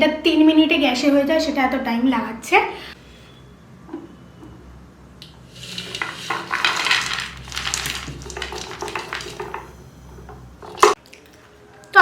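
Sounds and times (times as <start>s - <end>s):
popcorn rattling against metal: 5.5s - 9.8s.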